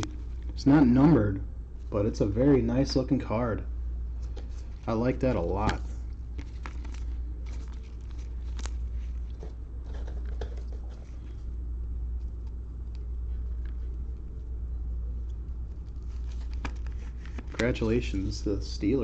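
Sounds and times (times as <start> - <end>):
steady low hum: 0.0 - 19.0
trading cards handled: 4.2 - 11.5, 15.2 - 18.4.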